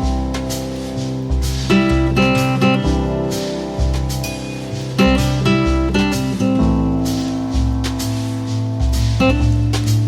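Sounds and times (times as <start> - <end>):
guitar and bass music: 0.0 - 10.0.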